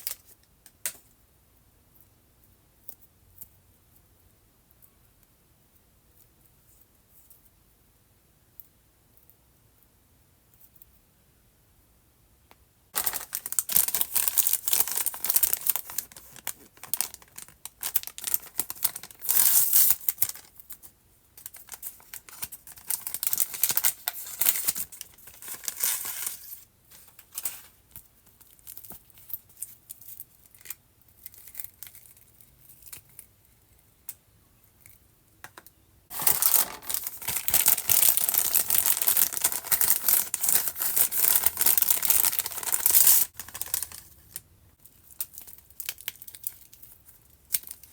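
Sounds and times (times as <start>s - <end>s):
packaging tearing and crinkling: 13.0s - 20.5s, 21.4s - 26.6s, 36.1s - 44.4s.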